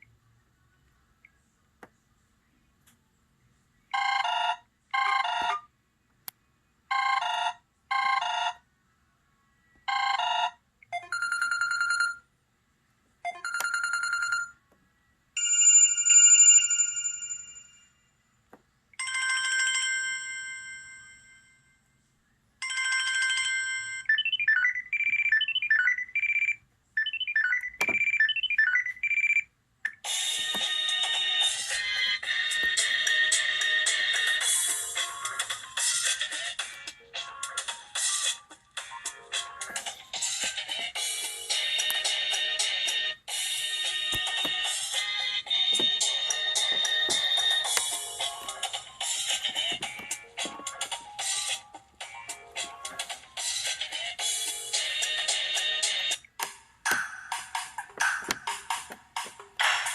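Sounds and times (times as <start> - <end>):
warbling phone ring: 13.4 - 14.6, 22.6 - 34.4.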